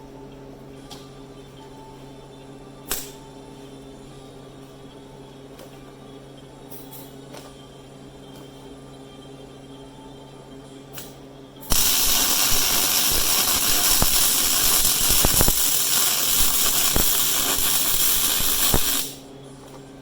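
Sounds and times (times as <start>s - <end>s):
low background music: 0.0s - 20.0s
arc welding crackling hiss: 11.7s - 19.3s.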